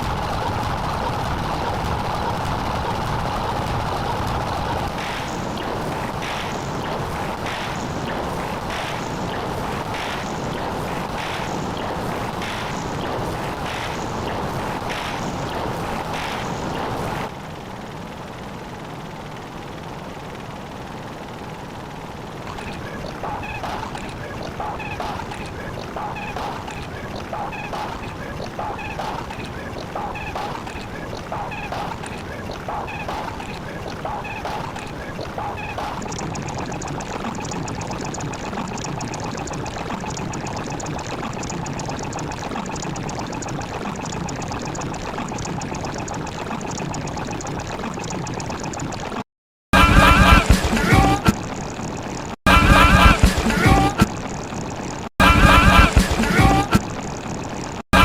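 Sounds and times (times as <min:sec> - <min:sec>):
steady rushing noise: 0:00.0 - 0:17.9.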